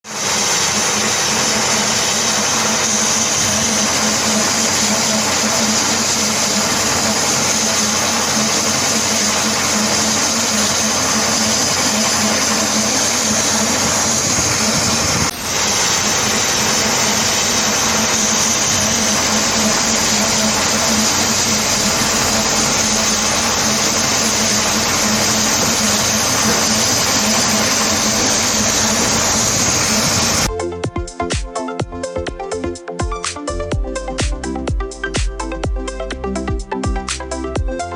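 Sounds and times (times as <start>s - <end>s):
wire saw cutting stone: 0.0s - 30.5s.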